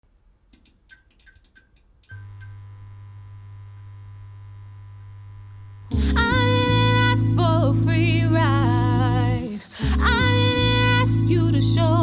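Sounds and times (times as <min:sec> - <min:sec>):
steady electrical hum: 0:02.1 - 0:07.2.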